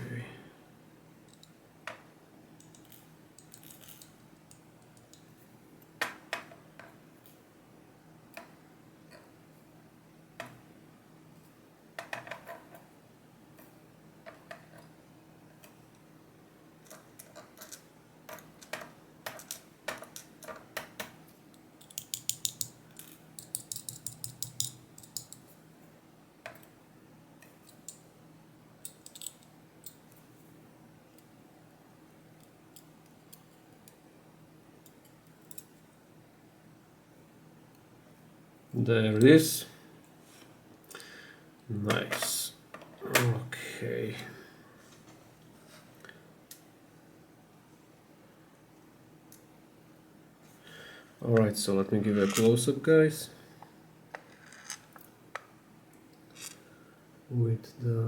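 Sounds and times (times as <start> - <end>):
faint steady hum: 0.0 - 58.0
lock parts clicking and rattling: 21.8 - 25.4, 28.9 - 30.0, 52.1 - 52.6.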